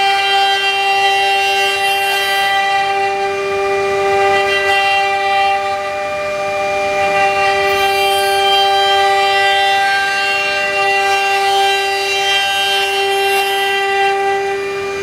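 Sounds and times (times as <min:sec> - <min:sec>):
machine spindle high whine: 0:00.0 - 0:15.0.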